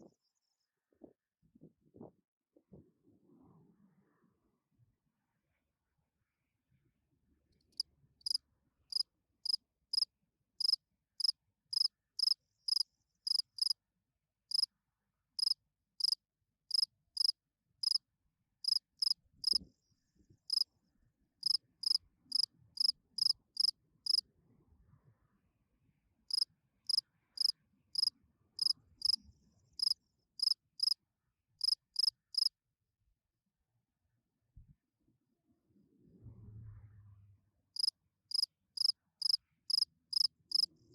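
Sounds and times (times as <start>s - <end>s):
cricket chirping: 7.7s - 13.8s, 15.4s - 18.0s, 18.6s - 19.6s, 21.4s - 24.2s, 26.3s - 29.2s, 29.8s - 31.0s, 31.6s - 32.5s, 37.8s - 40.7s.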